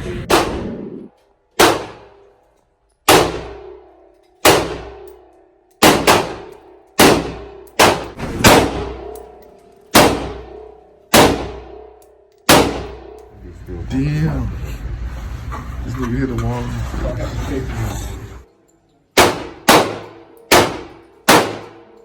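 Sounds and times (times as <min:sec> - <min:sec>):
gunshots with ringing echo: 0:00.1 - 0:02.3, 0:03.1 - 0:13.2, 0:19.2 - 0:22.0.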